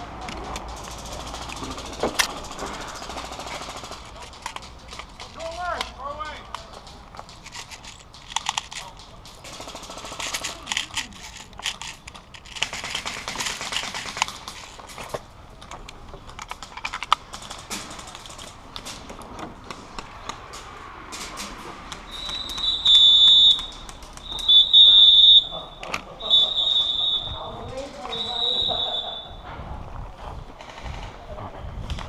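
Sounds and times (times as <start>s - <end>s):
rapid sharp clicks: 0.0s - 5.9s.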